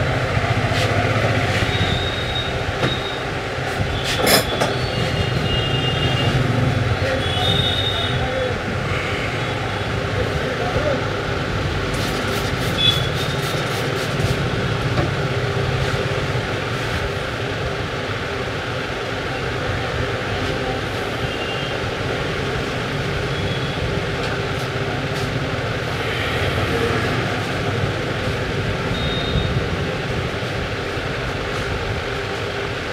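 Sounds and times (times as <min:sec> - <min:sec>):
steady rumbling noise: 0:23.9 - 0:32.9.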